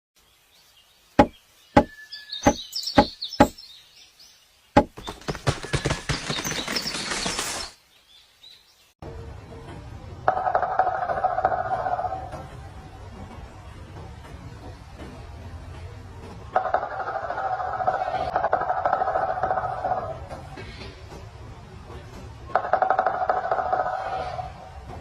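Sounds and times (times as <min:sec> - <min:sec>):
faint bird chirps: 0:00.4 - 0:04.7
woodpecker pecking at wood: 0:01.2 - 0:03.6, 0:04.8 - 0:06.0.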